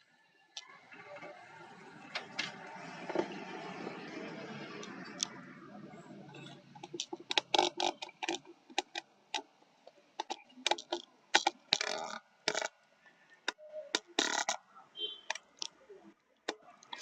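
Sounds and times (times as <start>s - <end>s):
sharp clicks and taps: 6.8s - 12.7s.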